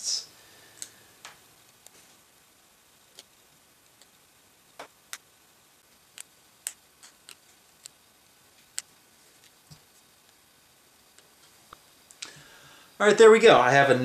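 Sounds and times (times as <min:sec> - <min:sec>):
spatula clicking and ticking: 0:03.1 - 0:04.2, 0:06.0 - 0:09.6.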